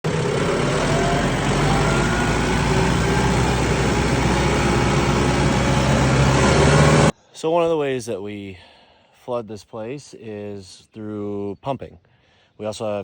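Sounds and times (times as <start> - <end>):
engine running steadily: 0.0 - 7.1.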